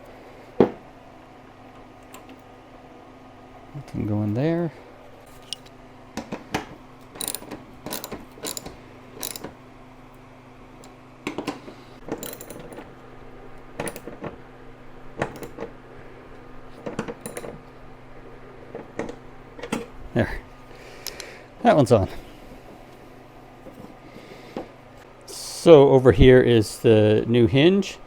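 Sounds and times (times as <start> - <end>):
low steady hum: 0.0 - 28.0
hand tools clicking on metal: 7.0 - 9.6, 12.1 - 12.8, 16.8 - 17.6.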